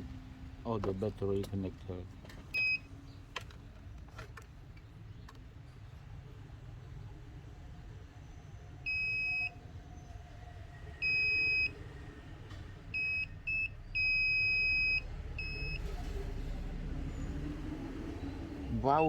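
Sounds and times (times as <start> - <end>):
multimeter continuity beeps: 8.9 - 9.5, 11.0 - 11.8, 13.0 - 15.8.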